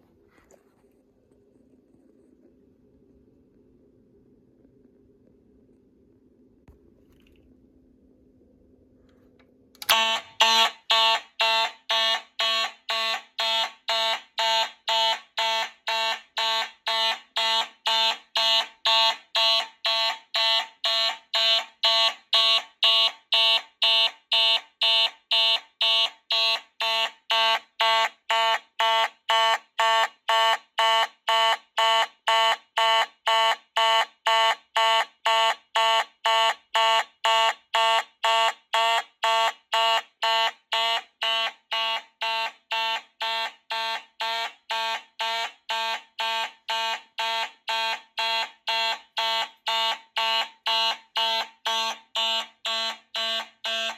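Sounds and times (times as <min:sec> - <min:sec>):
pulsed fire alarm: 0:09.8 - 0:53.9.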